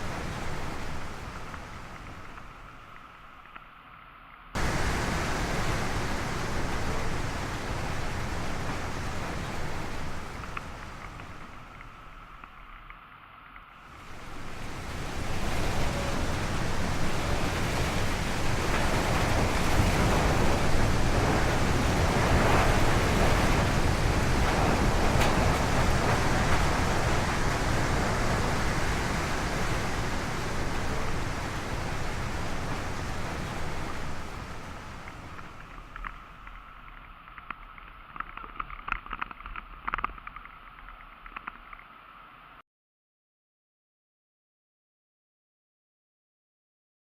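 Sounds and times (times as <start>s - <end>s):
rushing wind: 0.0s - 2.8s, 4.6s - 12.2s, 13.9s - 37.2s.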